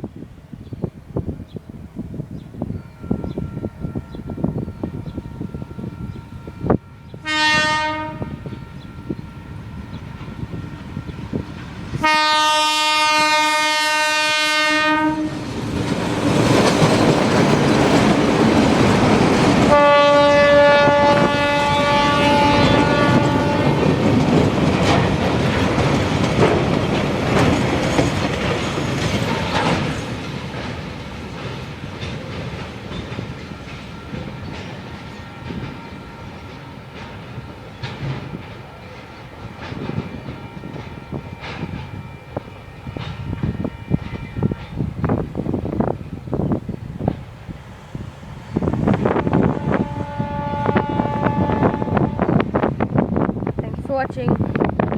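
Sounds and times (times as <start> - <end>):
train rumbling past: 0.0 - 54.9
locomotive horn blasts: 2.7 - 15.4, 19.7 - 24.0, 49.0 - 52.6
wagons clattering over rail joints: 15.5 - 19.7, 23.3 - 41.9.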